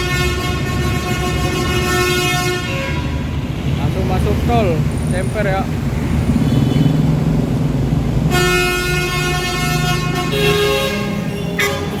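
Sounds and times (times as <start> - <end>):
multi-tone bus horn: 0.0 - 3.4, 8.3 - 12.0
bus engine running: 0.0 - 12.0.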